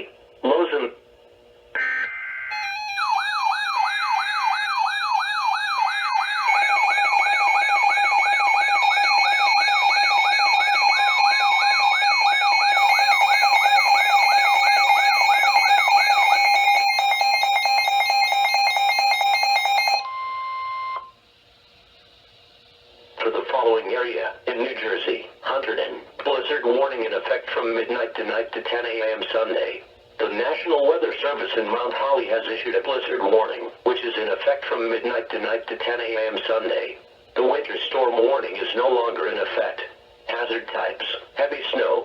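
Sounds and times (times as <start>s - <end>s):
steady electronic tones: 1.7s - 21.2s
siren-like whooping alarm: 1.8s - 21.1s.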